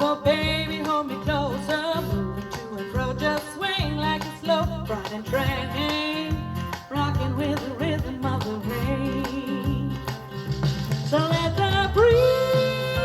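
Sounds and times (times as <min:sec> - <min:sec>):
country band music with singing: 0:00.0 - 0:13.0.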